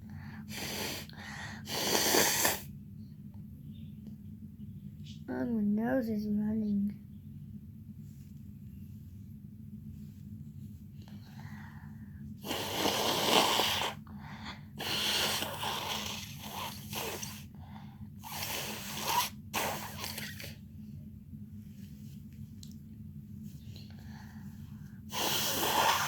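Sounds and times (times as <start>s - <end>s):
person blowing nose: 0.5s - 1.1s, 1.7s - 2.6s, 12.4s - 14.0s, 14.8s - 17.5s, 18.2s - 20.6s, 25.1s - 26.0s.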